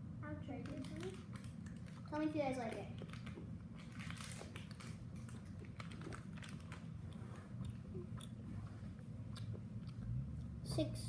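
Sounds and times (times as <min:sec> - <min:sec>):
low room hum: 0:00.0 - 0:11.0
person chewing nuts: 0:03.0 - 0:10.6.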